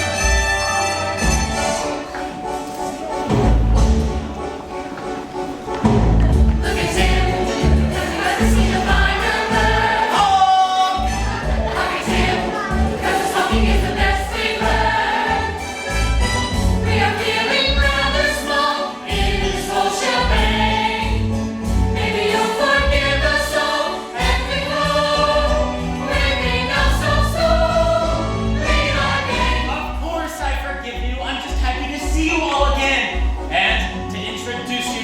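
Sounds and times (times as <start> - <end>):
instrumental accompaniment with bass: 0.0 - 35.0
ensemble singing together: 6.2 - 30.0.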